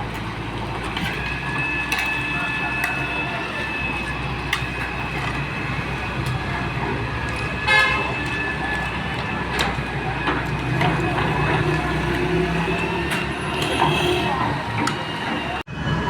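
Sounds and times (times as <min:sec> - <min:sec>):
excavator diesel engine running: 0:00.0 - 0:16.0
vehicle horn toot: 0:07.5 - 0:08.9, 0:11.7 - 0:14.6.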